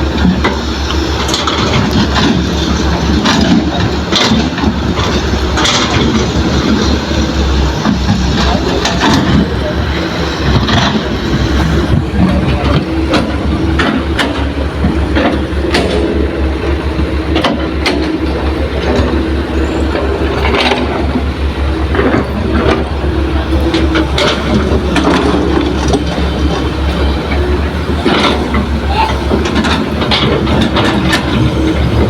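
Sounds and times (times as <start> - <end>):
diesel engines rumbling: 0.0 - 32.0
metallic clanks and knocks: 21.9 - 32.0.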